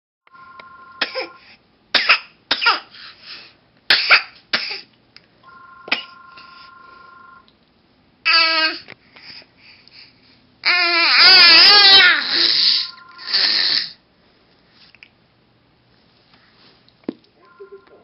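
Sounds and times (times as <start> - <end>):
person coughing: 1.0 - 1.4, 5.9 - 6.2.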